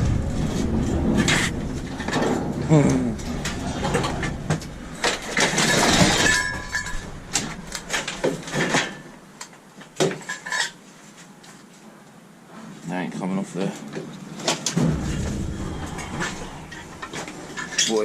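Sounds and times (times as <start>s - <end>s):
scrap metal clanking: 0.0s - 9.1s, 14.7s - 18.0s.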